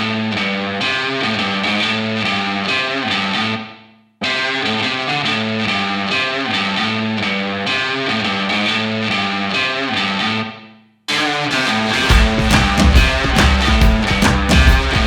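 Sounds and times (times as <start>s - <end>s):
distorted electric guitar music: 0.0s - 15.0s
rock music: 11.1s - 15.0s.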